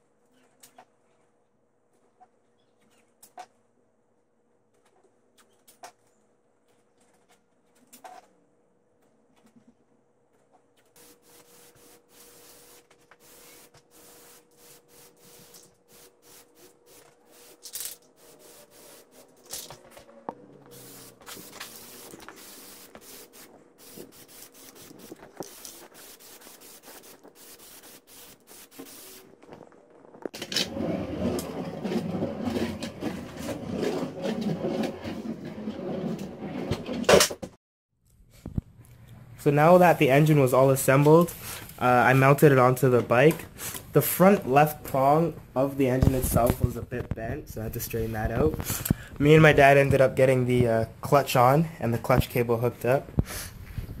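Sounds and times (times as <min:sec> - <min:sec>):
hands rubbing and scraping parts: 0:09.0 - 0:37.5.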